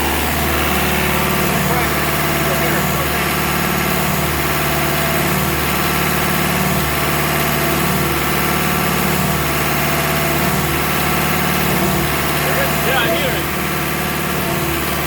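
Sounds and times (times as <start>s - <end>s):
concrete pump engine and hydraulics: 0.0s - 15.0s.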